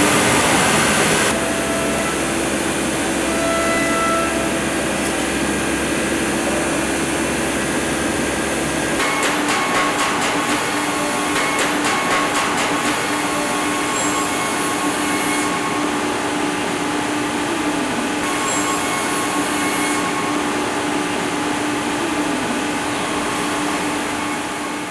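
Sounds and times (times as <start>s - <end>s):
machinery rushing noise: 0.0s - 15.3s
constant machine hum: 0.0s - 24.9s.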